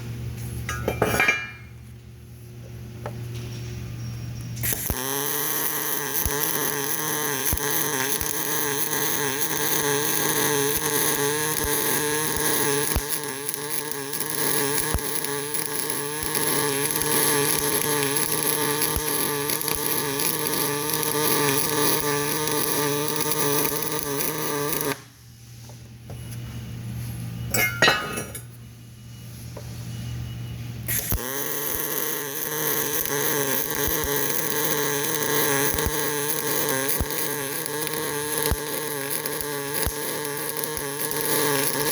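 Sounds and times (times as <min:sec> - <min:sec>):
welding arc: 0:04.4 - 0:25.1, 0:30.8 - 0:41.9
sharp metal clink: 0:27.5 - 0:28.5.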